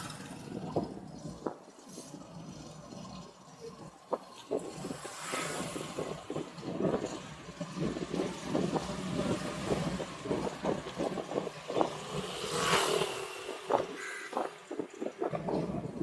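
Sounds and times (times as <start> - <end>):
car passing by: 4.7 - 7.2, 11.6 - 14.0.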